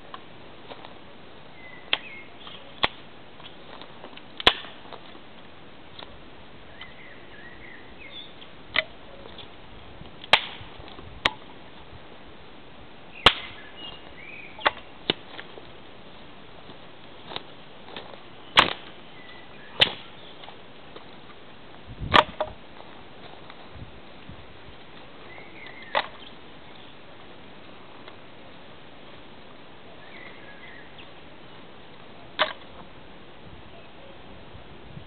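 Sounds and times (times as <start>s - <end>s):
wood fire crackling and popping: 10.1s - 11.4s.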